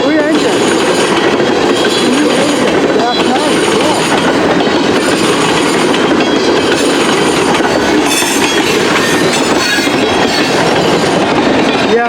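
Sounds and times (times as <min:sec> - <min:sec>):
train wheels rumbling on rail: 0:00.0 - 0:12.0
high-pitched wheel squeals: 0:07.8 - 0:10.7.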